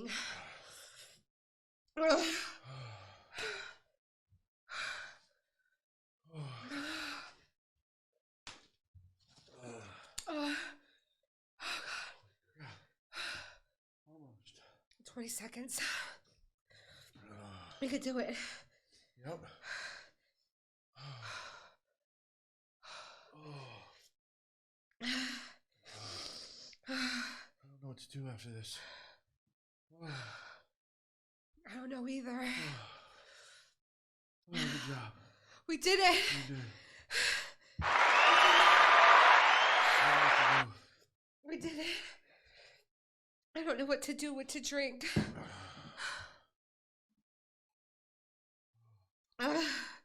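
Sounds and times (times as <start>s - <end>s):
people sighing and panting: 0.0s - 1.2s, 2.1s - 3.9s, 6.3s - 7.5s, 9.4s - 13.6s, 16.8s - 18.7s, 22.8s - 24.1s, 25.0s - 27.6s, 34.5s - 35.3s, 36.3s - 40.6s, 45.1s - 46.4s.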